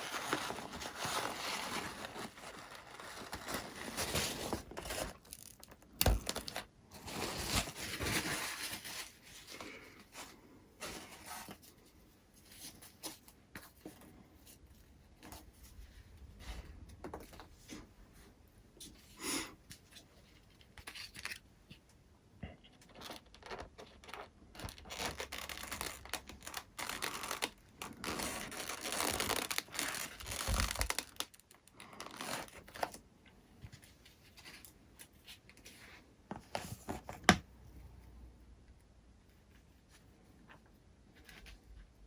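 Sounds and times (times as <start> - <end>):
rustling scraping and tearing: 0.0 - 5.7, 22.9 - 33.0.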